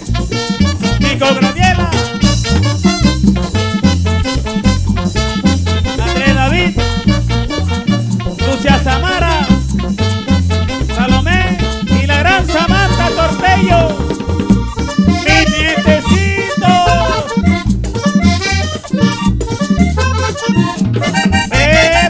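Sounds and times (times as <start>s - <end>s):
pounding low drum beat: 0.0s - 8.4s, 9.0s - 22.0s
sliding melodic line: 11.6s - 22.0s.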